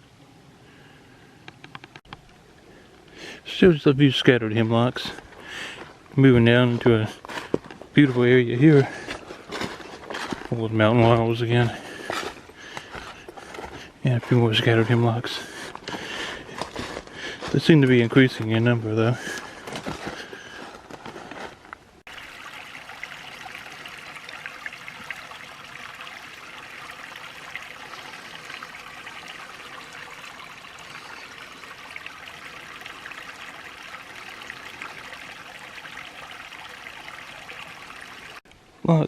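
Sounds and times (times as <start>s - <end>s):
creek trickling: 2.1s - 21.2s, 22.0s - 38.6s.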